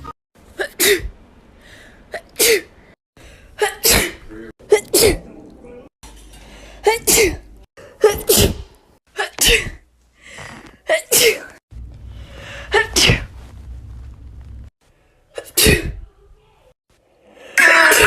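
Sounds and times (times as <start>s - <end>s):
woman sneezing: 2.4s - 2.7s, 3.6s - 5.2s, 6.8s - 8.6s, 9.2s - 9.8s, 10.9s - 11.6s, 12.7s - 13.3s, 15.4s - 16.0s.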